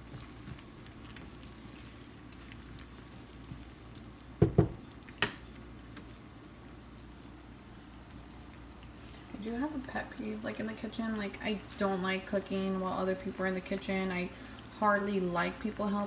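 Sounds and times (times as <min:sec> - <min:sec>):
food sizzling in a pan: 0:00.0 - 0:16.0
sharp knocks: 0:04.4 - 0:04.8.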